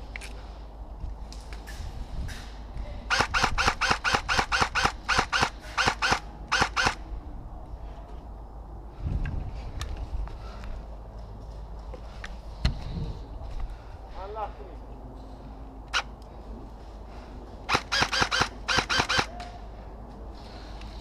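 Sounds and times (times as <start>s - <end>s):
airsoft rifle firing: 3.1s - 7.0s, 17.7s - 19.4s.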